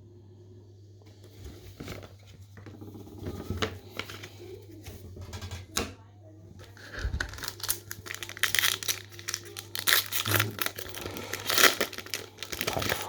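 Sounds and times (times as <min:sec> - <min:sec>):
cards scratching and shuffling: 0:06.6 - 0:13.0.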